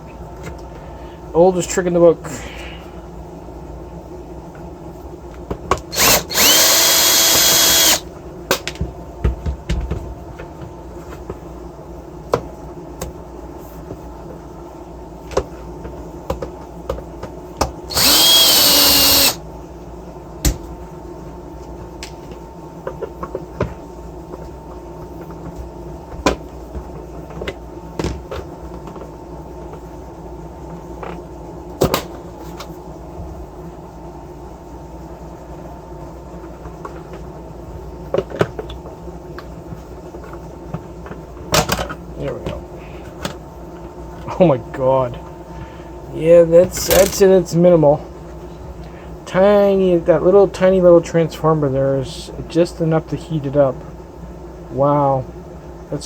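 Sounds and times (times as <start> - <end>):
power drill motor whirring: 5.9 - 8.0, 17.9 - 19.4.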